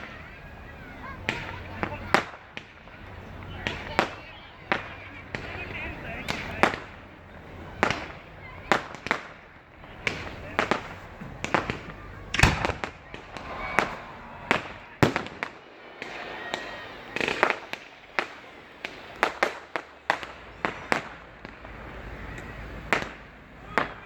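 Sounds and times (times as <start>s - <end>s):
fireworks bangs: 0.0s - 24.0s.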